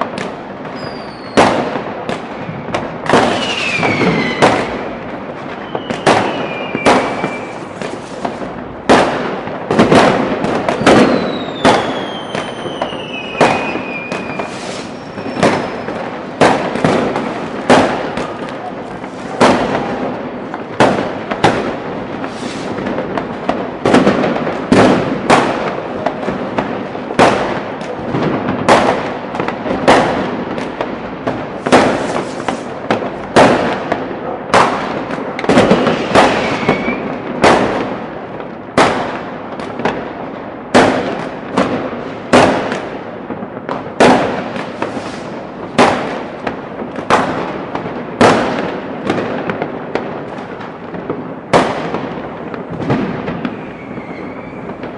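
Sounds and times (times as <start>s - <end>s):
firecrackers crackling: 0.0s - 54.9s
fireworks sharp bangs echoing: 0.0s - 54.9s.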